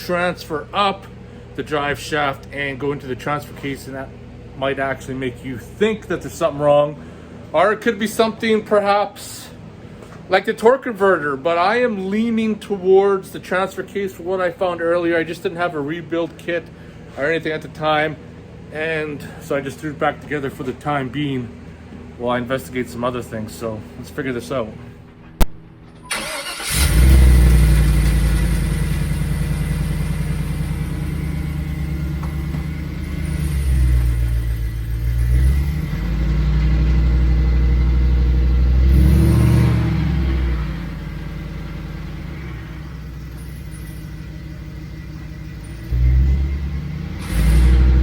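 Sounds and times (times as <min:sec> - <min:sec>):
car engine revving: 0:26.1 - 0:48.0
high whine: 0:26.8 - 0:48.0.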